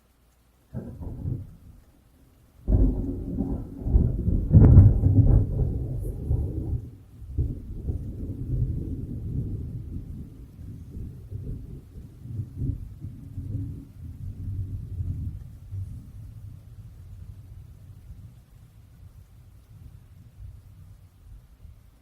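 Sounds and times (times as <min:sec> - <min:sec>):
thunder rumbling and cracking: 0:00.7 - 0:01.8, 0:02.6 - 0:18.4.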